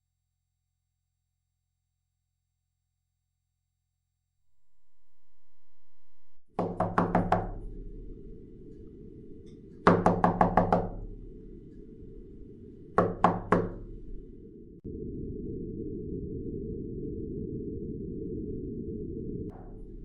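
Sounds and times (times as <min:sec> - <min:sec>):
steady low drone: 0:07.2 - 0:10.2, 0:10.8 - 0:20.0
rapid heavy knocking: 0:09.8 - 0:11.0.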